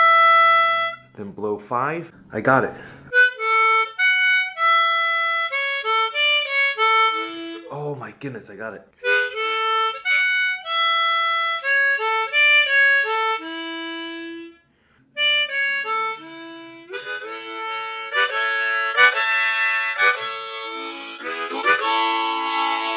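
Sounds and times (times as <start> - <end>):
harmonica melody: 0.0 - 1.2, 3.1 - 7.9, 9.0 - 22.9.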